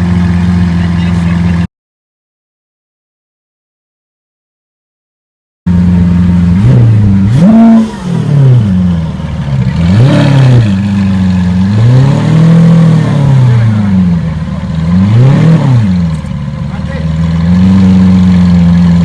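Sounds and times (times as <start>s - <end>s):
car engine idling and revving: 0.0s - 1.7s, 5.7s - 19.0s.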